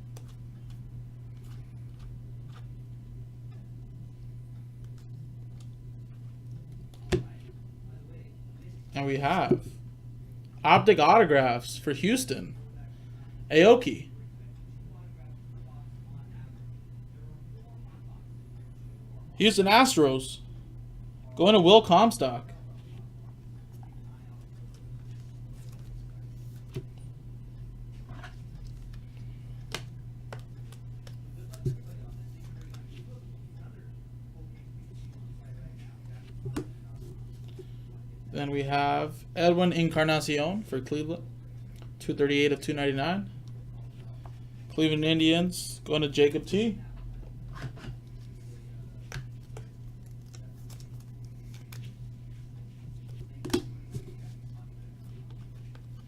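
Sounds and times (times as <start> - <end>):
low hum: 0.0 - 39.8
cards shuffling: 0.1 - 2.7, 24.6 - 26.9, 49.1 - 54.4.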